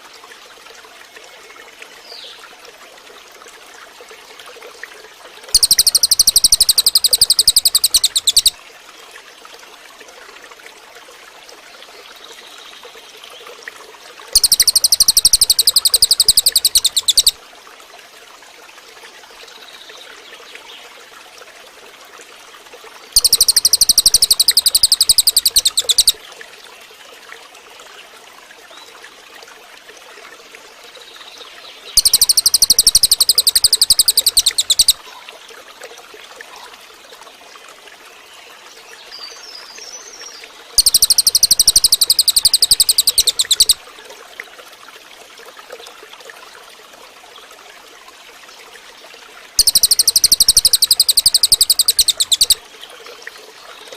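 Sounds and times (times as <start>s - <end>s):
water trickling: 0.0s - 53.9s
songbird buzzing trill: 5.6s - 8.6s, 14.4s - 17.4s, 23.2s - 26.2s, 32.0s - 35.0s, 40.8s - 43.8s, 49.6s - 52.6s.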